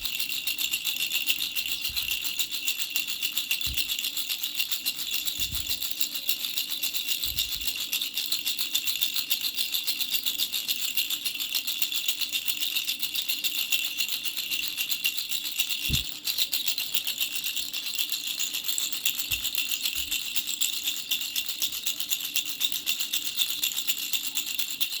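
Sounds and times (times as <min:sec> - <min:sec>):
baby rattle shaken: 0:00.0 - 0:25.0.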